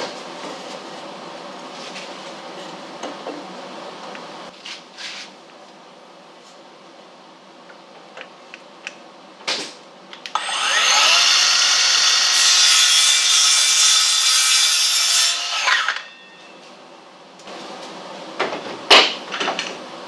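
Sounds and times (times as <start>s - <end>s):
electric power saw cutting wood: 10.3s - 16.2s.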